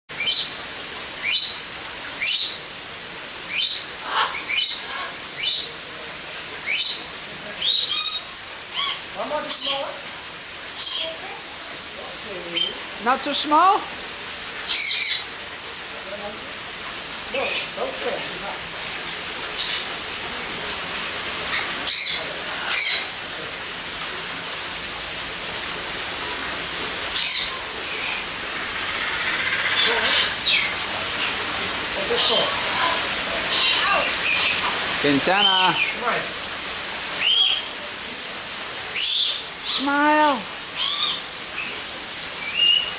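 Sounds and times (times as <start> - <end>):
background hiss: 0.1 - 42.9
parrot calling: 0.2 - 0.6, 1.2 - 1.6, 3.5 - 5.7, 6.6 - 10.0, 10.8 - 11.2, 14.7 - 15.3, 17.3 - 18.4, 19.6 - 19.9, 21.5 - 23.2, 27.1 - 31.4, 32.0 - 36.2, 37.2 - 37.7, 38.9 - 41.8, 42.4 - 42.9.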